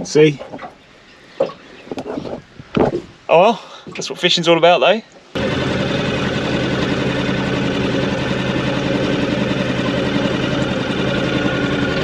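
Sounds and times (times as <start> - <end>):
wind noise: 1.9 - 3.3
outboard motor running: 5.4 - 12.0
water wash: 5.4 - 12.0.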